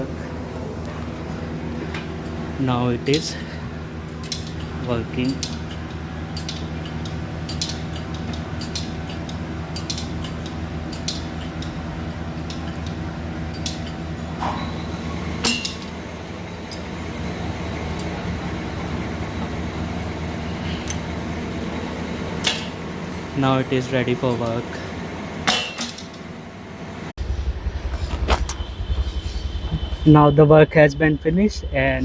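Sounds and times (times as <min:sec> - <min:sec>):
low mechanical hum: 0:00.0 - 0:32.0
metallic clicks and clinks: 0:04.2 - 0:11.8.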